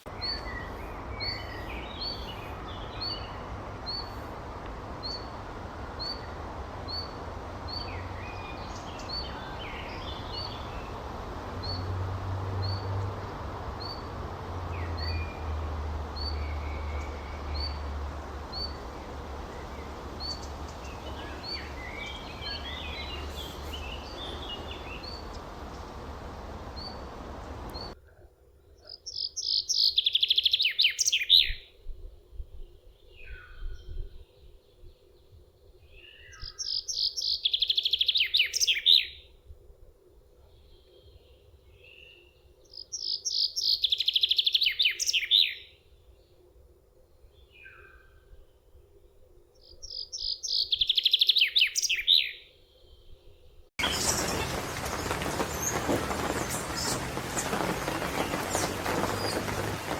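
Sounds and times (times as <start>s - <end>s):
birds calling: 0.0s - 28.0s, 53.8s - 59.9s
outdoor background noise: 0.0s - 59.9s
bird singing fast trill: 19.5s - 28.0s, 53.8s - 59.9s.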